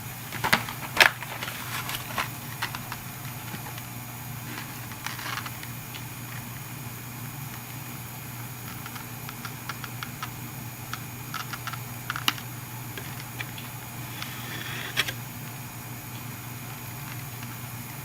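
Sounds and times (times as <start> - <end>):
low steady hum: 0.0 - 18.0
small plastic items clicking: 8.6 - 15.2.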